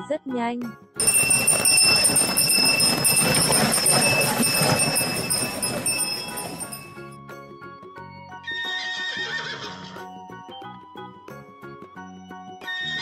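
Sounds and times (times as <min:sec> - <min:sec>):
horse hoofbeats galloping: 0:01.0 - 0:07.1
bells jingling: 0:01.0 - 0:07.2.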